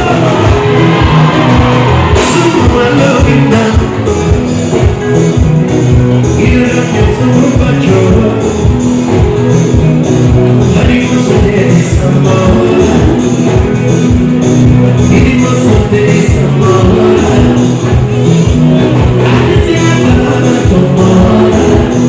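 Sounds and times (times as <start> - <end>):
live band music: 0.0 - 22.0
person singing: 0.0 - 22.0.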